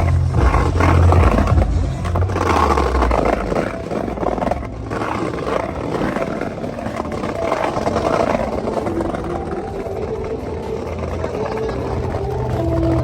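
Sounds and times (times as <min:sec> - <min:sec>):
car engine running: 0:00.0 - 0:07.0.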